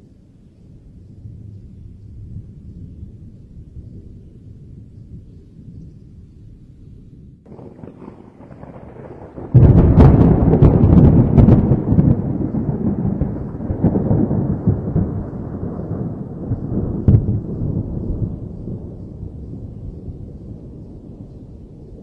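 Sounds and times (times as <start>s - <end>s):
thunder rumbling and cracking: 7.3s - 22.0s.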